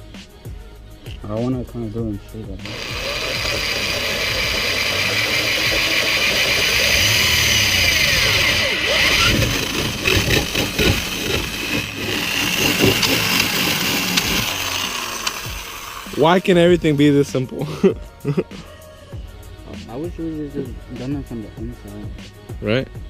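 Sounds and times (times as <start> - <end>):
power drill running: 2.6 - 17.1.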